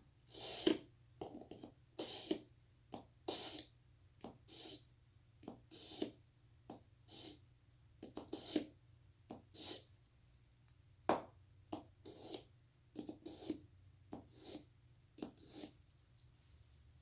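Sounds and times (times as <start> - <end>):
knife rasping on sharpener: 0.3 - 0.8, 1.4 - 2.4, 3.3 - 3.7, 4.5 - 4.8, 5.7 - 6.2, 7.1 - 7.4, 8.1 - 8.7, 9.5 - 9.9, 12.0 - 13.6, 14.2 - 15.8.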